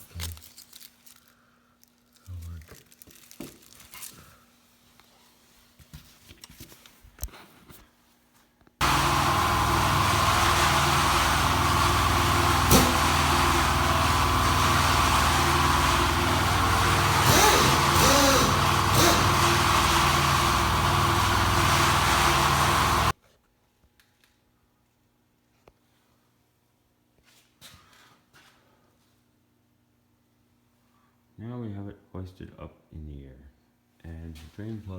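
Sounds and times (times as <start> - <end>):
powered hoist running: 8.8 - 23.1.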